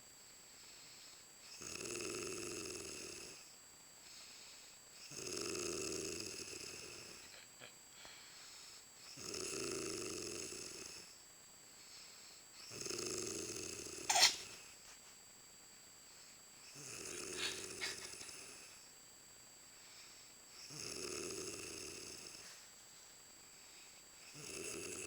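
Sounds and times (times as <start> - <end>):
woman snoring: 1.6 - 3.4, 5.1 - 7.3, 9.2 - 11.1, 12.7 - 14.4, 16.8 - 18.8, 20.6 - 22.4, 24.3 - 25.0.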